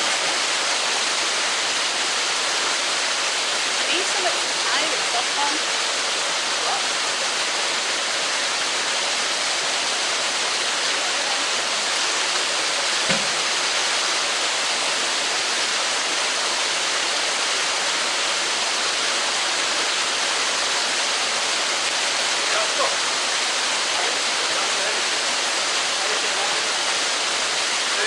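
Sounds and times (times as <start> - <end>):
running water rushing: 0.0 - 28.0
low thump: 13.0 - 13.5.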